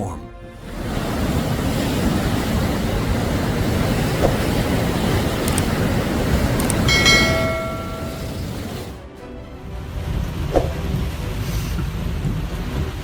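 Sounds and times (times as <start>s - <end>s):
steady pitched tone: 6.9s - 8.6s.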